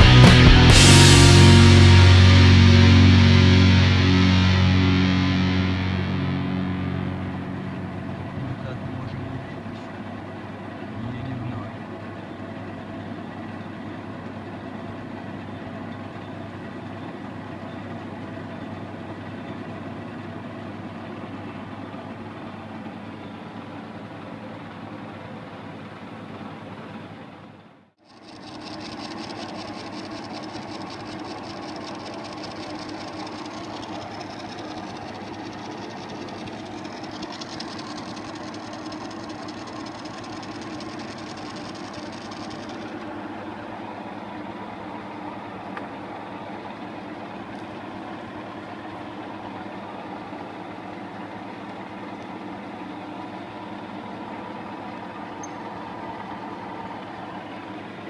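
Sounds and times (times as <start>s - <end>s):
metal lathe motor hum: 28.2s - 43.1s.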